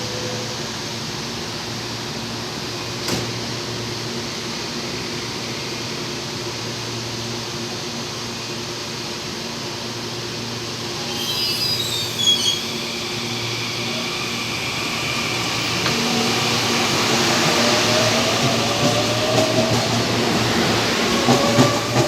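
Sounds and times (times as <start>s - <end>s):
electric train humming: 3.6s - 22.0s
high whines and squeals: 11.0s - 22.0s.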